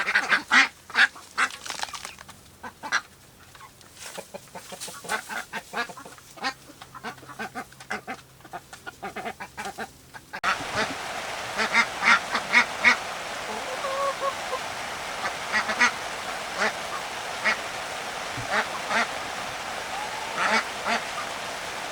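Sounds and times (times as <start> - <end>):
chickens clucking: 10.4 - 21.9
steady hiss: 10.4 - 21.9.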